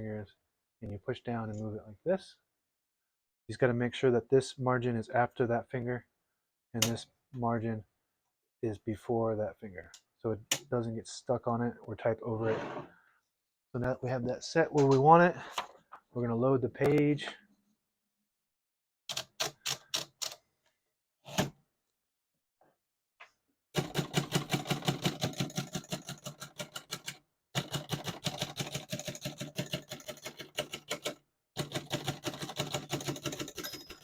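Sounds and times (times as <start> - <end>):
typewriter margin bell: 32.7 - 34.0.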